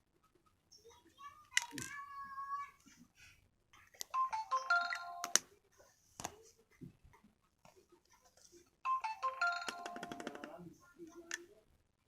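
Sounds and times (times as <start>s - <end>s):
electronic ringtone melody: 4.2s - 5.4s, 8.9s - 10.4s.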